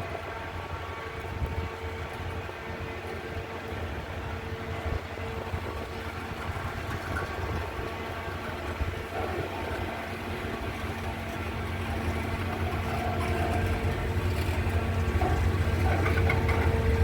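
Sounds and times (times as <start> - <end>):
train diesel engine droning: 0.0 - 17.0.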